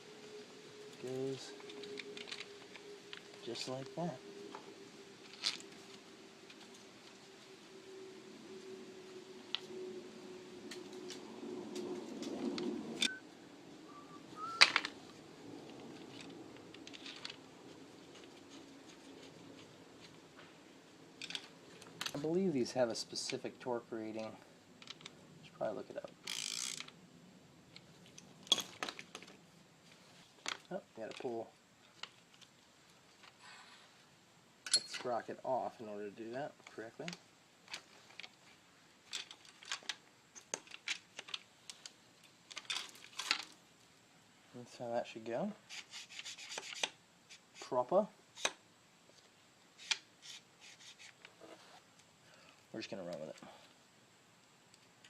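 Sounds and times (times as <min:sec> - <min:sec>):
metal parts and tools clinking: 0:01.2 - 0:04.2, 0:16.0 - 0:17.4, 0:21.2 - 0:22.4, 0:27.8 - 0:29.4, 0:34.6 - 0:35.1, 0:39.0 - 0:43.6
metal tools clinking: 0:28.1 - 0:29.3, 0:34.6 - 0:35.1.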